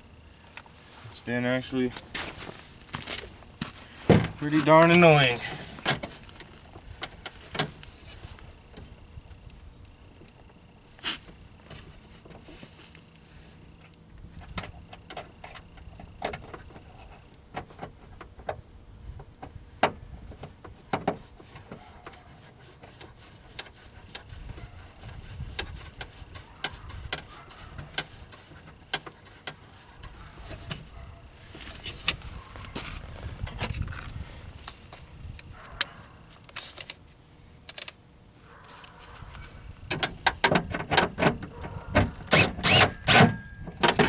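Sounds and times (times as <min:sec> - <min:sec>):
faint steady hum: 0:00.0 - 0:44.0
tools and plastic parts clicking: 0:37.7 - 0:38.0.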